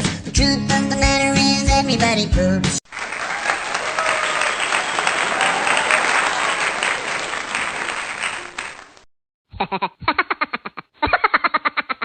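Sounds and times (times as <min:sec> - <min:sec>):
crowd applauding: 0:02.9 - 0:09.1.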